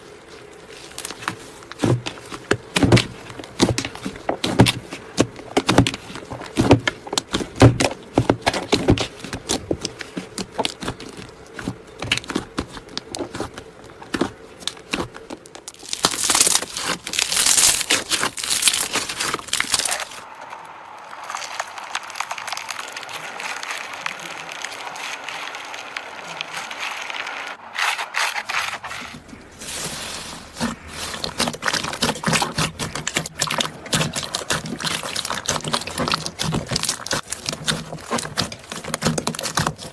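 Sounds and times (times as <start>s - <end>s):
slime clicking and crackling: 0.7s - 20.3s, 21.0s - 27.6s, 30.5s - 39.9s
slime hissing: 16.2s - 28.5s.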